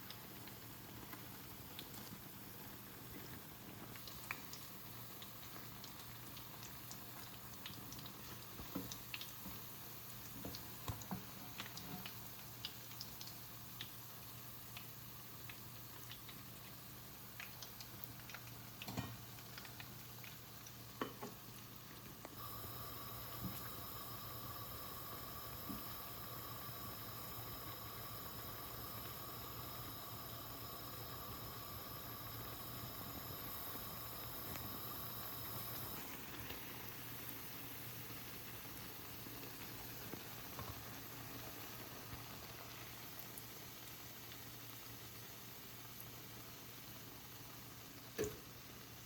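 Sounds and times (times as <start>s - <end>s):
food sizzling in a pan: 0.0s - 49.0s.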